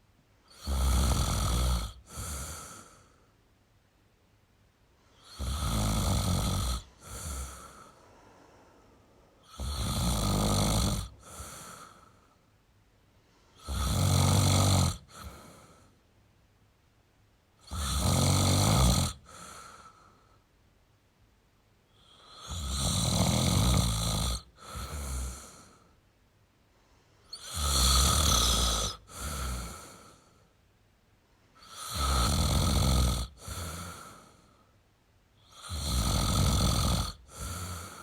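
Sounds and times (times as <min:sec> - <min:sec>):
person snoring: 0:00.5 - 0:03.2, 0:05.1 - 0:08.8, 0:09.4 - 0:12.4, 0:13.5 - 0:15.9, 0:17.6 - 0:20.2, 0:22.0 - 0:25.9, 0:27.3 - 0:30.4, 0:31.6 - 0:34.6, 0:35.4 - 0:38.0.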